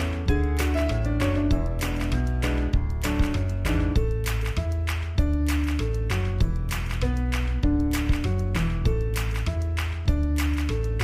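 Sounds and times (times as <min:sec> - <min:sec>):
synth music with bass and beat: 0:00.0 - 0:11.0.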